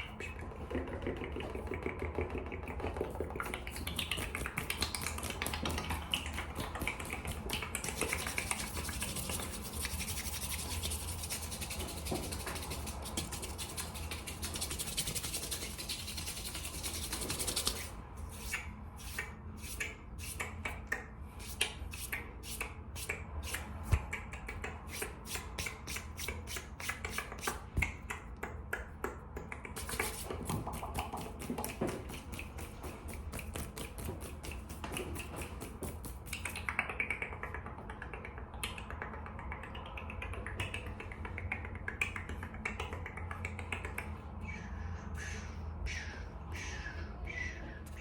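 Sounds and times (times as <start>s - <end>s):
finger snapping: 32.1s - 44.2s.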